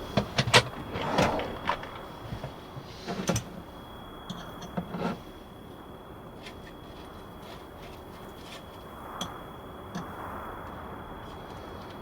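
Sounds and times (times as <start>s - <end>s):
brief scrape: 0.8s - 2.2s.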